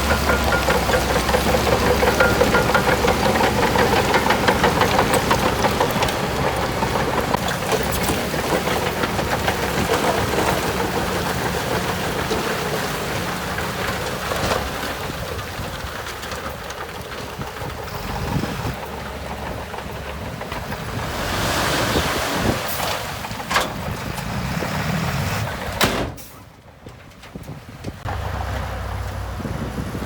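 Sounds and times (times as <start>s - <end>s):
rapid clatter: 0.0s - 21.1s
heavy machinery diesel engine: 0.0s - 30.0s.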